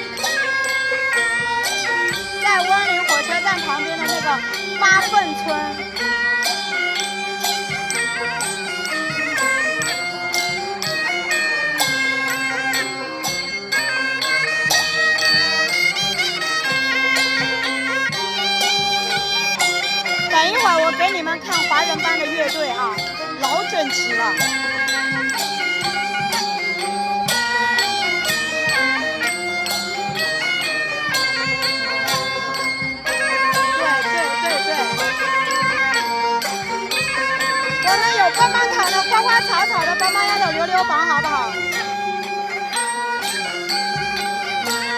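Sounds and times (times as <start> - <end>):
shrill reedy wind melody: 0.0 - 10.9, 17.5 - 44.9
percussion strikes: 0.0 - 44.9.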